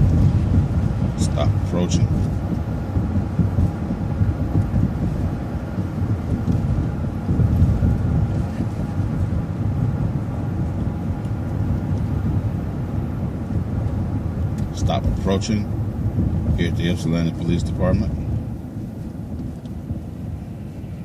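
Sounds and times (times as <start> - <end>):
bus engine and road noise: 0.0 - 21.0.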